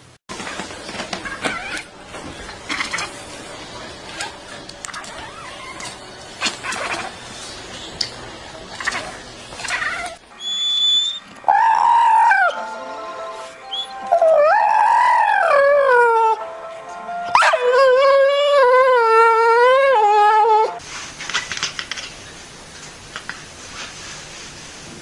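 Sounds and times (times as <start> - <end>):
dog howling: 8.8 - 12.6, 14.0 - 16.4, 17.3 - 20.8.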